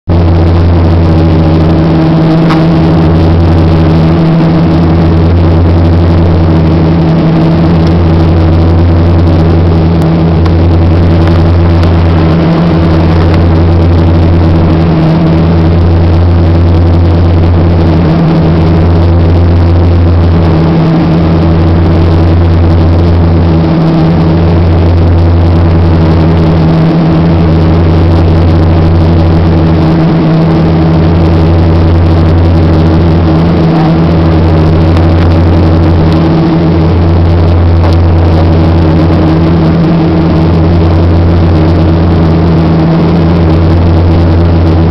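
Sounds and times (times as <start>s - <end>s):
propeller drone in cabin: 0.0s - 44.9s.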